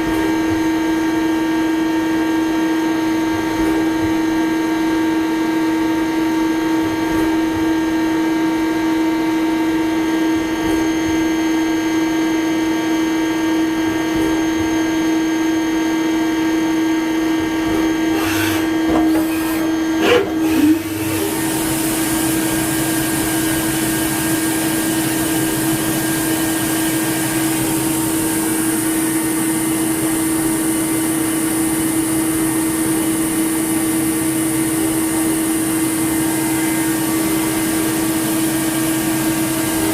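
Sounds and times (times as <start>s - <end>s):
lathe humming: 17.9s - 29.4s.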